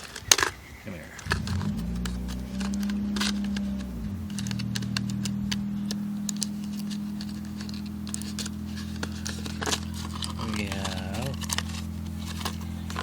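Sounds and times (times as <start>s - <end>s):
tablet package clicking and rattling: 0.0s - 13.0s
low engine-like hum: 1.2s - 13.0s.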